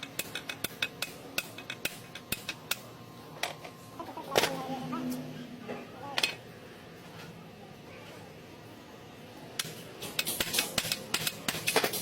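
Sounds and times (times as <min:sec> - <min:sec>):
irregular sharp clicks and knocks: 0:09.6 - 0:12.0.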